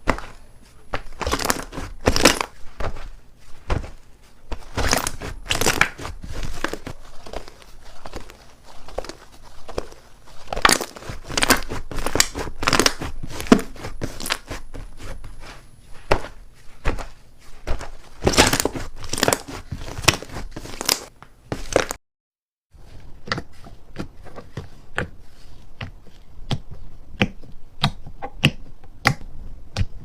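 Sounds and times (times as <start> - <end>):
slime crackling and squelching: 0.0 - 22.0.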